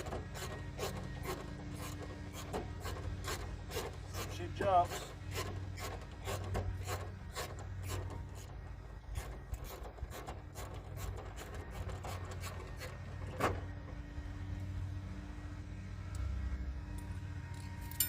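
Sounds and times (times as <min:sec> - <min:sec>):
hand tools scraping and clicking: 0:00.0 - 0:13.0
low hum: 0:05.0 - 0:18.0.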